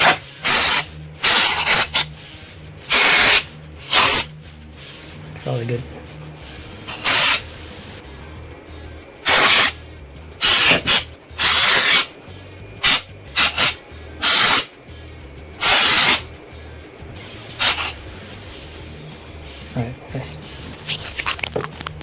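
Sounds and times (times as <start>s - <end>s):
air duster hissing blasts: 0.0s - 4.3s, 6.7s - 7.8s, 9.2s - 9.8s, 10.4s - 12.2s, 12.8s - 14.7s, 15.6s - 16.3s, 17.4s - 19.1s.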